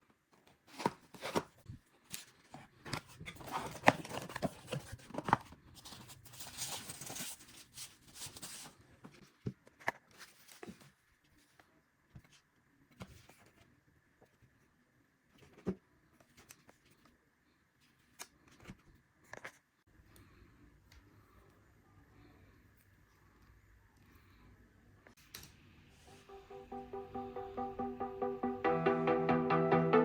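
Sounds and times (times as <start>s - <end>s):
packaging rustling: 2.2s - 8.8s.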